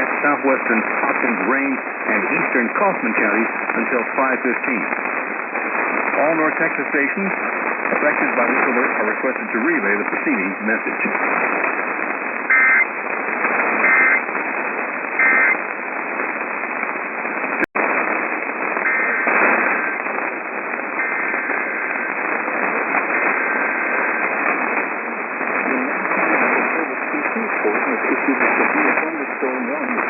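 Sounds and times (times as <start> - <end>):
radio static hiss: 0.0 - 30.0
two-pitch data tones: 12.5 - 12.9, 13.8 - 14.2, 15.2 - 15.6, 18.8 - 20.0, 21.0 - 22.1.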